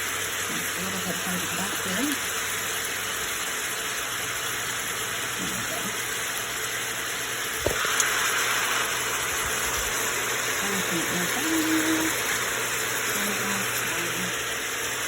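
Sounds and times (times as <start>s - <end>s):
food sizzling in oil: 0.0s - 15.0s.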